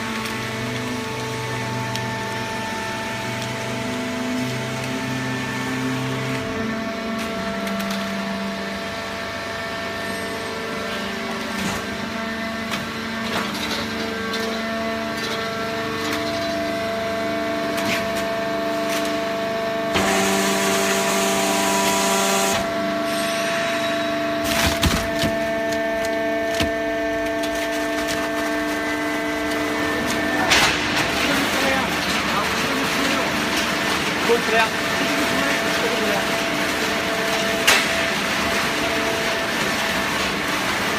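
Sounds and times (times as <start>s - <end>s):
hydraulic power unit humming: 0.0s - 40.9s.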